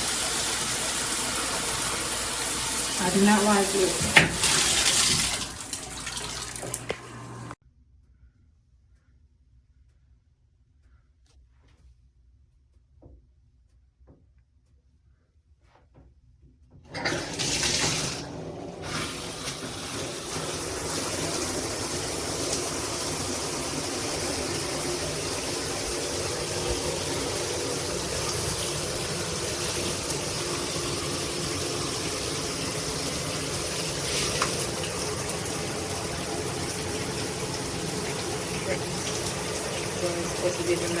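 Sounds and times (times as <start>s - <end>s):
shower water spraying: 0.0s - 7.6s, 17.0s - 41.0s.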